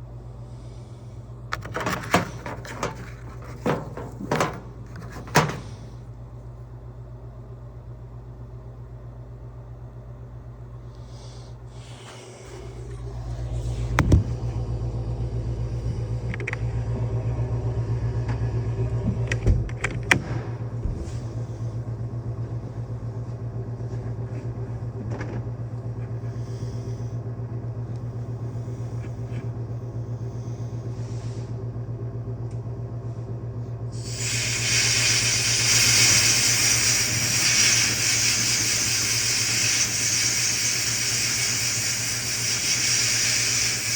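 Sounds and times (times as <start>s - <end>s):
steady machine hum: 0.0s - 43.9s
loud hiss: 34.0s - 43.9s.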